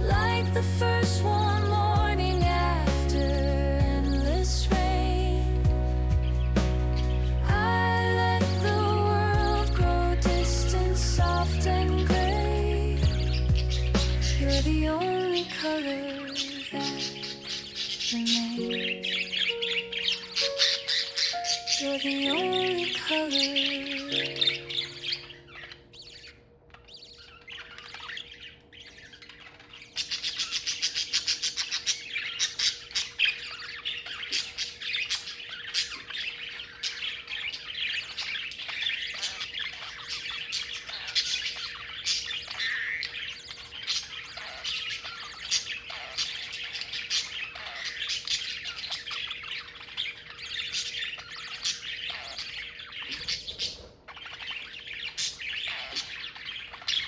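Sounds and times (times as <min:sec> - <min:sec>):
budgerigars chirping and squawking: 0:13.1 - 0:15.5, 0:16.3 - 0:57.0.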